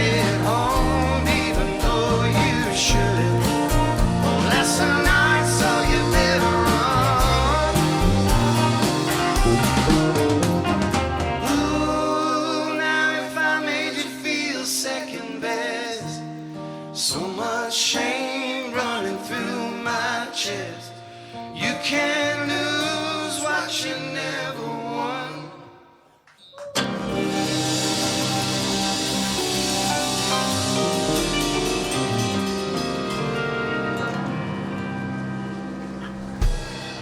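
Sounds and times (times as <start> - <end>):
live rock band: 0.0 - 15.9, 26.8 - 37.0
voices singing harmonies: 0.0 - 37.0.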